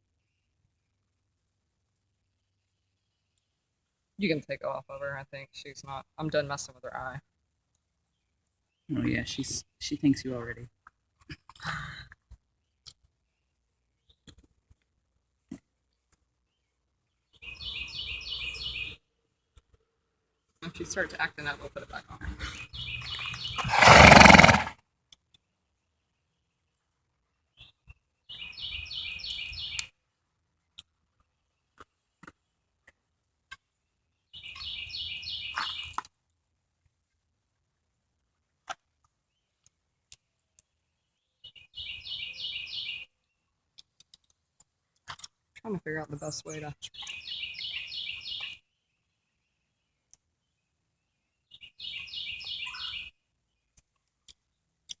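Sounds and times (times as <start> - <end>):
songbird chirping: 16.3 - 19.8, 22.5 - 24.7, 25.8 - 30.0, 33.5 - 36.1, 39.2 - 44.3, 46.0 - 55.0
horse whinnying: 23.6 - 24.7.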